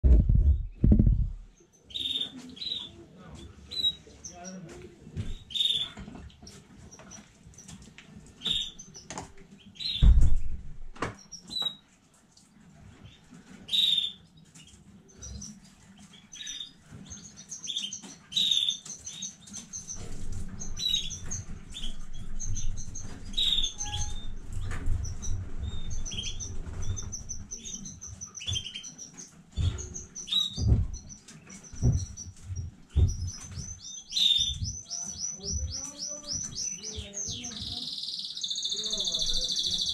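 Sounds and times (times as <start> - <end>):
low rumble: 0.0 - 1.5
knocks and thumps: 0.0 - 1.6, 10.0 - 11.2, 28.1 - 34.8
canaries chirping and trilling: 0.2 - 39.9.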